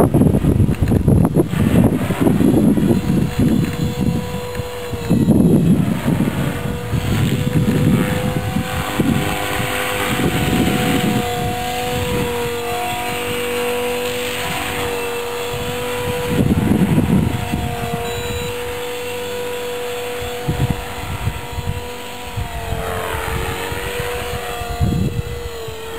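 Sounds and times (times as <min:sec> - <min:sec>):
model aircraft motor whining: 0:00.0 - 0:25.9
wind buffeting microphone: 0:00.0 - 0:25.9
higher tone: 0:03.9 - 0:20.8.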